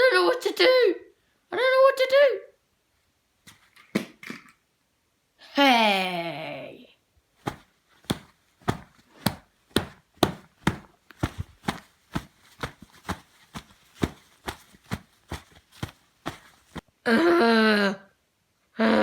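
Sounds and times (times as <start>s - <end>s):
puppets hitting: 7.4s - 16.8s.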